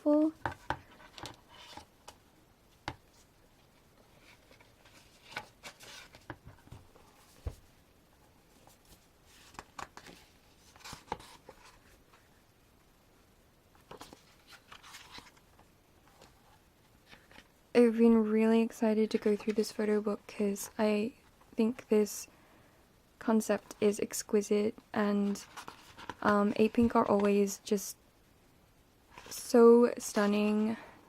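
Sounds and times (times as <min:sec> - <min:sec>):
card and paper rustling: 0:04.0 - 0:07.6, 0:08.5 - 0:12.3, 0:13.8 - 0:15.5, 0:25.2 - 0:27.5.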